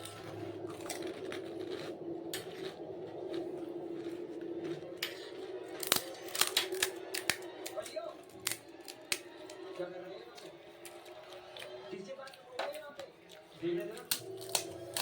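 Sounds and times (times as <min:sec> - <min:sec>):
steady low hum: 0:00.0 - 0:07.6.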